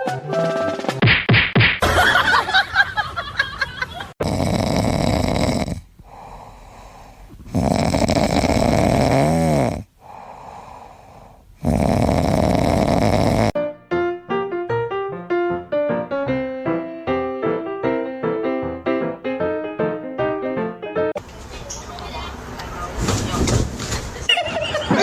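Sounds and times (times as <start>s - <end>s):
loud rasping snoring: 4.2s - 13.6s
quiet breathing out: 4.3s - 13.6s.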